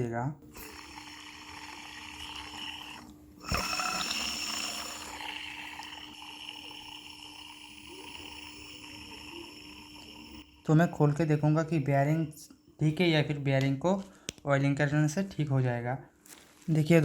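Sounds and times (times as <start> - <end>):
blower motor rasping whirr: 0.5 - 10.7.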